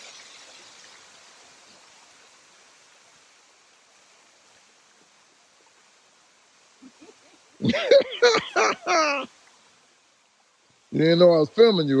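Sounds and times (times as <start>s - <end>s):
waterfall rushing: 6.7s - 9.4s.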